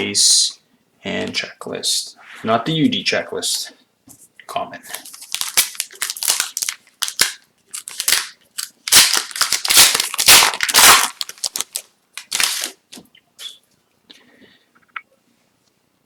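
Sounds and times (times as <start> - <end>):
foil wrapper crackling: 4.9 - 12.8.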